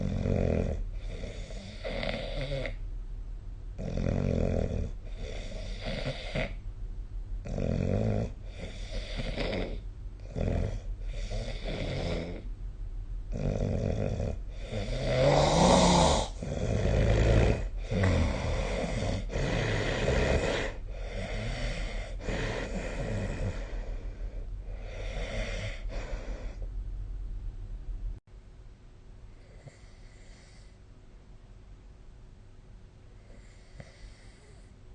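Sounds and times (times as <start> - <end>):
person snoring: 0.0 - 2.8, 3.8 - 6.6, 7.4 - 12.5, 13.3 - 26.7.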